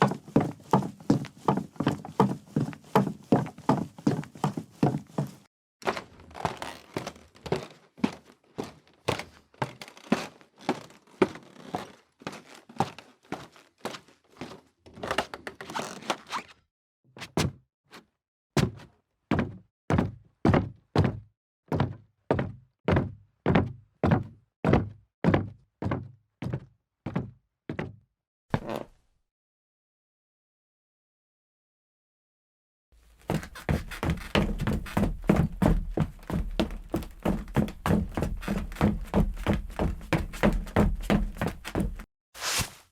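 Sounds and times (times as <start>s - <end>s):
footsteps on wooden floor: 0.0s - 15.2s, 33.2s - 42.9s
heavy thudding footsteps: 33.2s - 42.9s.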